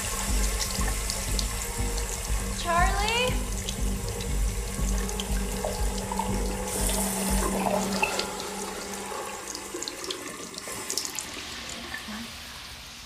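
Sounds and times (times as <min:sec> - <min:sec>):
low musical drone: 0:00.0 - 0:11.2
tap water running into sink: 0:00.0 - 0:13.0.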